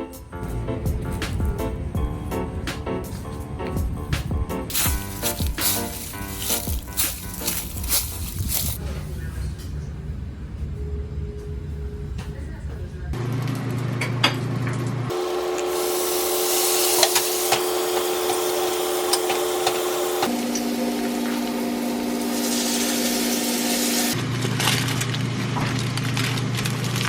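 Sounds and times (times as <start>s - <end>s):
sustained chord music: 0.0s - 8.8s
steady hiss: 4.7s - 8.8s.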